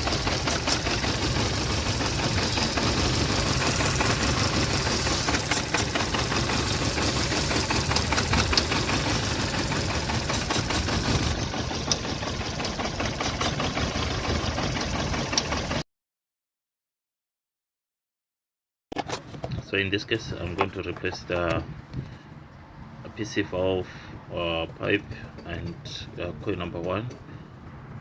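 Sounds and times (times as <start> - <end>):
car engine idling with misfire: 0.0 - 15.8.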